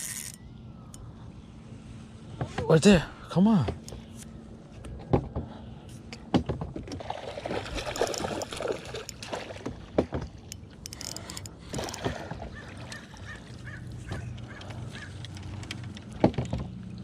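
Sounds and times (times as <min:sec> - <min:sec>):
low steady hum: 0:00.0 - 0:17.0
water splashing: 0:07.0 - 0:10.4.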